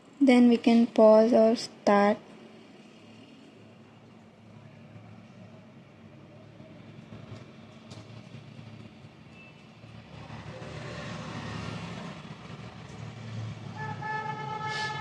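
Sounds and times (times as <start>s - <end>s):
rumble of passing vehicles: 0.0s - 15.0s
vehicle horn: 13.7s - 15.0s.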